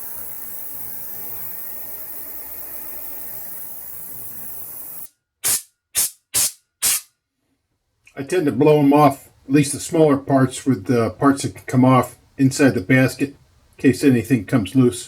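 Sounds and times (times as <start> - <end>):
ultrasonic cleaner hissing: 0.0 - 5.1
compressed air blasts: 5.4 - 7.1.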